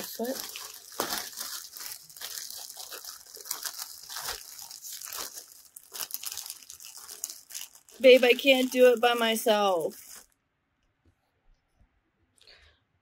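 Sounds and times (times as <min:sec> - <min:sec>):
packaging tearing: 0:00.0 - 0:10.3
packaging crinkling: 0:00.0 - 0:10.4.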